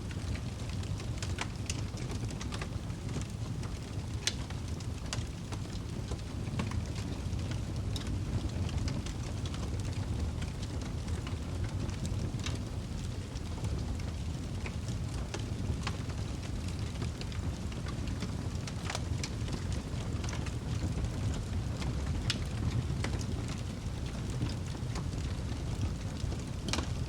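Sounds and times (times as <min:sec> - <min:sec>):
wood fire crackling: 0:00.0 - 0:27.0.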